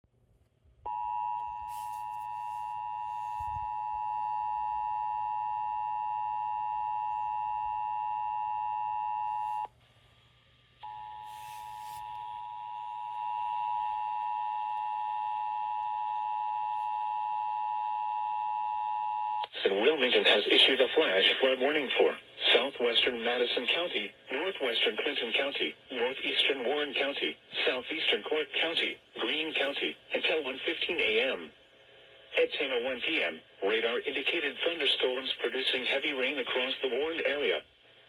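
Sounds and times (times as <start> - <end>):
two-tone alarm: 0.9 - 9.7, 10.8 - 19.4.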